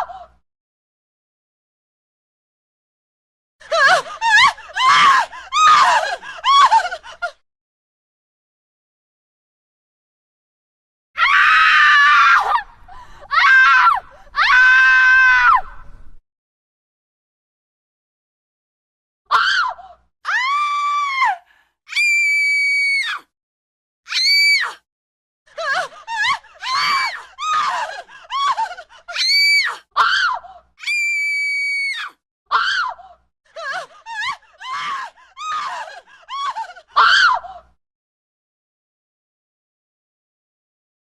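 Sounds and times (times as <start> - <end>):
woman screaming: 3.8 - 7.0, 13.3 - 15.6, 25.7 - 33.1, 34.1 - 37.6.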